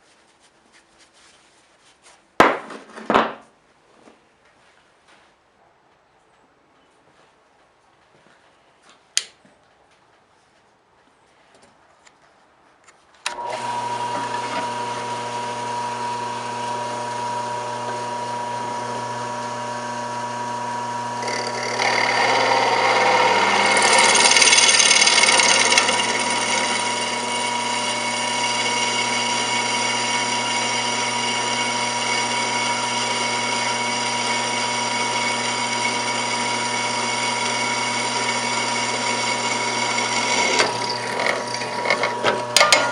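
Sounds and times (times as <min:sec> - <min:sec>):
electric power tool running: 0:13.3 - 0:42.9.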